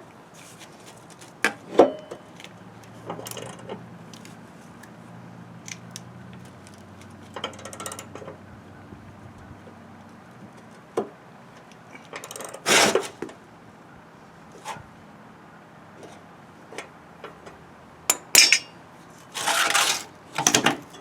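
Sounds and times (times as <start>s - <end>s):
metal tools knocking on metal: 18.1s - 18.8s
metal scraping: 19.3s - 20.2s.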